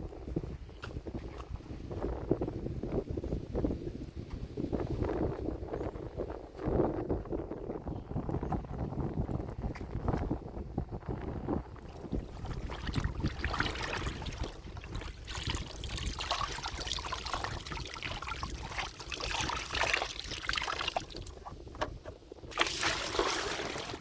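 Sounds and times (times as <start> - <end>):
water sloshing and trickling: 11.8 - 24.0.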